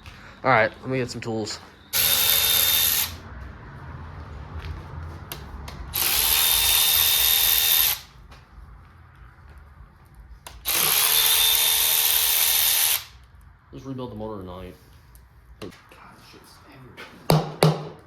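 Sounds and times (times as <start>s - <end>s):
power tool whirring: 1.9s - 3.2s, 5.9s - 8.1s, 10.5s - 13.2s.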